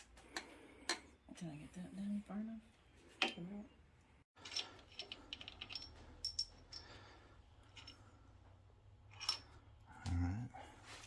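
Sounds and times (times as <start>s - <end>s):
metal tools clicking and clinking: 4.4s - 8.1s.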